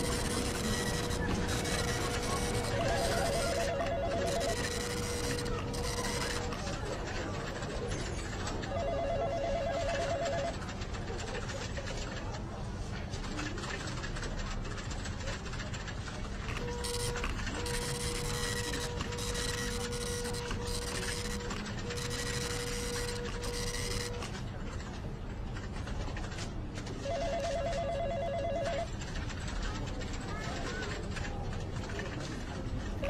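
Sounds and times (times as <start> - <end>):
telephone ringing trill: 0.0 - 7.3, 8.4 - 10.6, 16.5 - 24.3, 27.0 - 28.9
office printer whining: 0.0 - 10.7, 15.0 - 25.0
low office background: 0.0 - 33.0.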